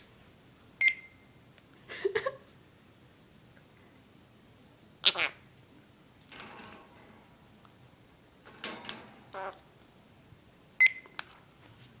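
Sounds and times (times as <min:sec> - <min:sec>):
parrot beep: 0:00.8 - 0:01.3, 0:10.8 - 0:11.1
parrot squawking: 0:05.0 - 0:05.4, 0:09.3 - 0:09.6.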